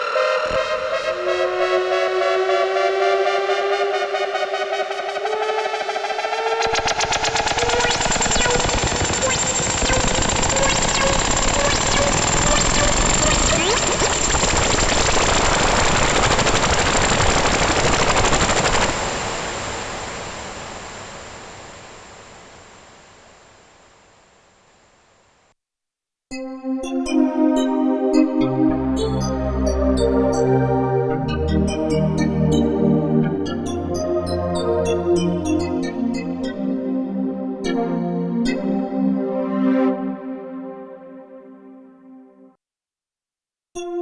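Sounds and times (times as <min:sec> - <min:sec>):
bright sustained synthesizer tone: 0:00.2 - 0:23.9.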